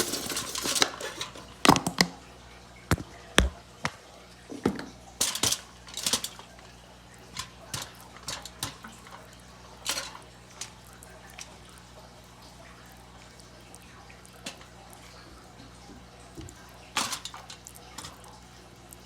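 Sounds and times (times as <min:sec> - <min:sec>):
scraping and rustling: 0:00.0 - 0:01.6
utensils and dishes clinking: 0:00.0 - 0:02.1, 0:04.5 - 0:11.6, 0:16.4 - 0:18.4.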